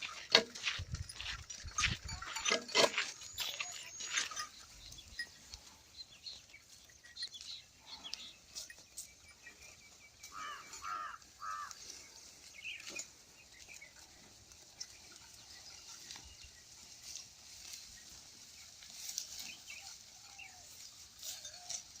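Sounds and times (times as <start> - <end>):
outdoor field ambience: 0.0 - 22.0.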